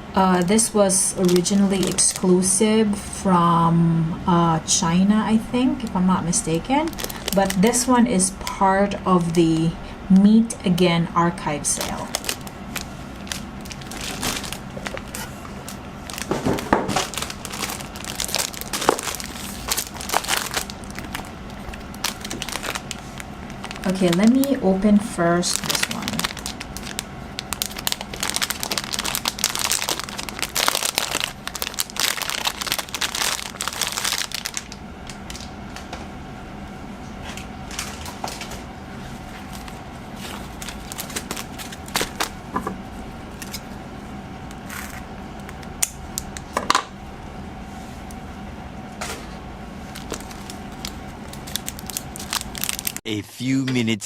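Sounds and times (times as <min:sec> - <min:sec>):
plastic packaging crinkling: 0:01.0 - 0:02.4, 0:06.6 - 0:07.9, 0:11.6 - 0:24.8, 0:25.4 - 0:35.5, 0:39.4 - 0:42.4, 0:49.8 - 0:53.0.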